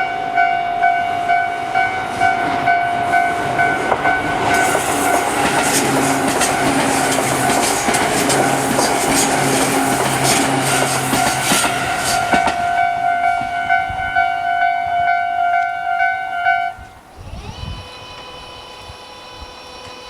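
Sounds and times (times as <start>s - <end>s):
fainter warning bell: 0.0s - 5.2s, 10.6s - 16.8s
crossing warning bell: 0.0s - 17.0s
train wheels clacking over rail joints: 1.8s - 13.8s.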